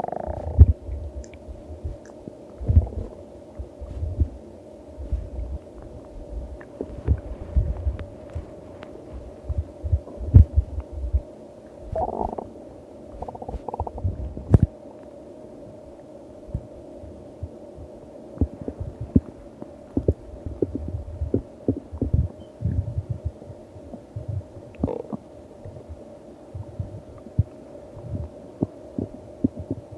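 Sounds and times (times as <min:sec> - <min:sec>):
stomach growling: 0:00.0 - 0:04.3, 0:11.9 - 0:12.5, 0:13.2 - 0:14.7, 0:19.9 - 0:25.9
faint steady hum: 0:00.0 - 0:29.9.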